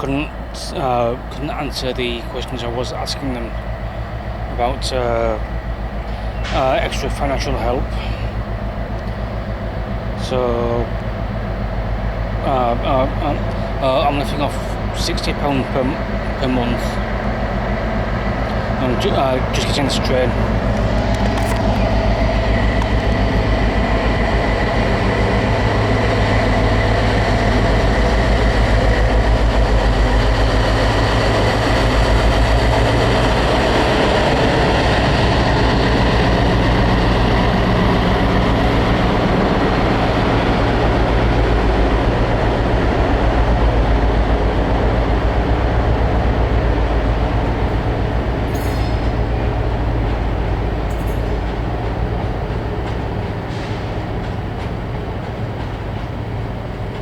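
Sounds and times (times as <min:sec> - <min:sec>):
steady whine: 0:00.0 - 0:53.6
train rumble: 0:00.0 - 0:57.0.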